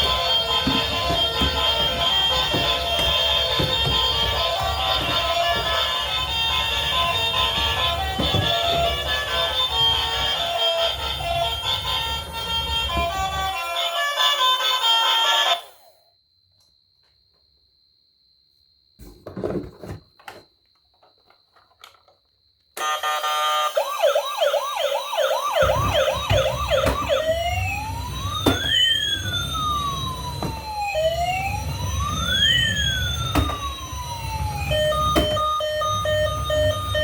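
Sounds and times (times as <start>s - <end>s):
toy electronic siren: 0.0s - 16.0s, 22.8s - 37.0s.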